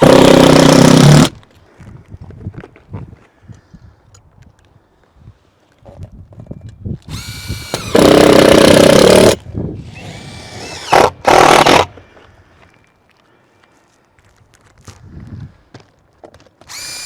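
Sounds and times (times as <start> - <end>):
power drill running: 7.1 - 11.9, 16.7 - 17.0.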